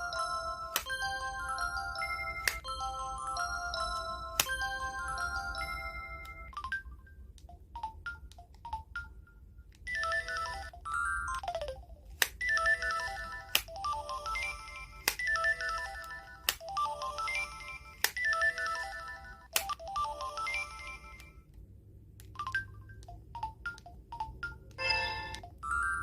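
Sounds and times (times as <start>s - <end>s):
phone ringtone melody: 0.0s - 21.5s, 22.3s - 26.0s
clicks and short tones: 22.3s - 26.0s.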